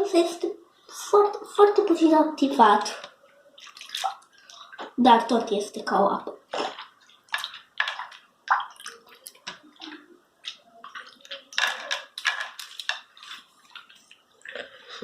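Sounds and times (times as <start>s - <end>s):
runny slime splashing: 2.8s - 5.1s, 6.5s - 14.8s.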